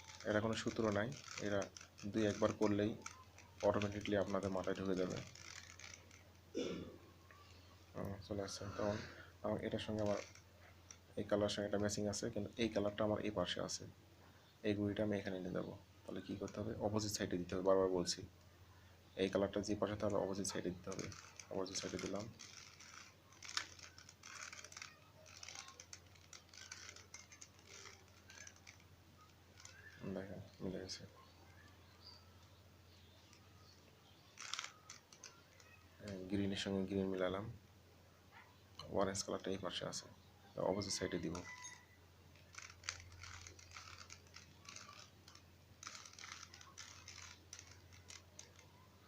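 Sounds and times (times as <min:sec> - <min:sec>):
plastic puzzle cube clicks: 0:00.0 - 0:06.4, 0:20.9 - 0:30.0, 0:34.2 - 0:36.2, 0:42.4 - 0:48.7.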